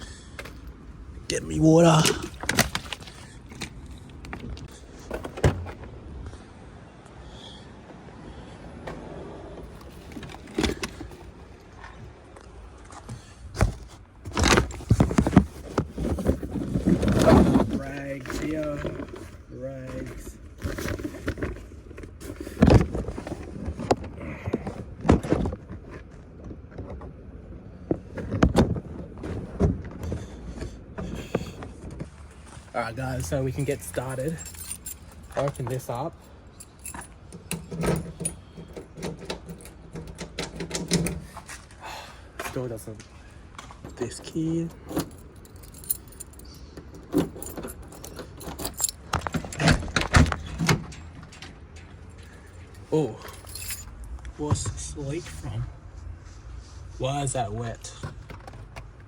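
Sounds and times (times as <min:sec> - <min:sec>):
objects knocking and clunking: 0:13.2 - 0:19.4, 0:44.7 - 0:54.9
keys jangling: 0:33.6 - 0:40.6, 0:44.7 - 0:49.7, 0:50.4 - 0:54.0.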